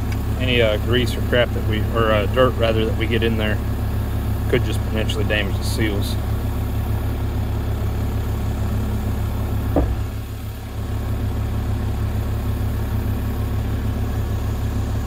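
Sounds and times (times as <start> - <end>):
diesel engine idling: 0.0 - 15.0
sharp knock: 9.7 - 10.1.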